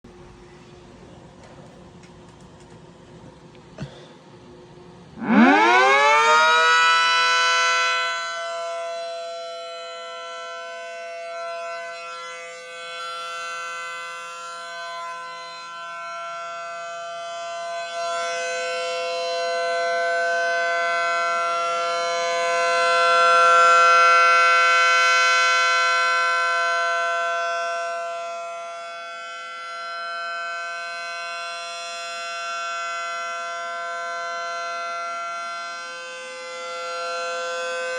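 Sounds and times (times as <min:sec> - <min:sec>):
siren winding up: 0:05.2 - 0:07.2.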